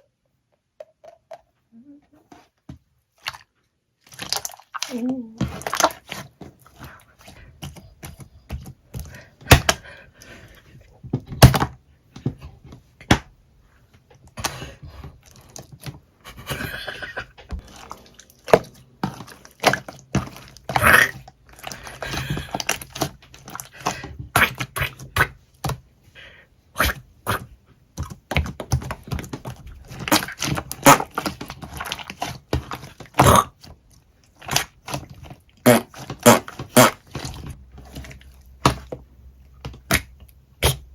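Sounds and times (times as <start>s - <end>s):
slime squeezed by hand: 16.4s - 25.5s.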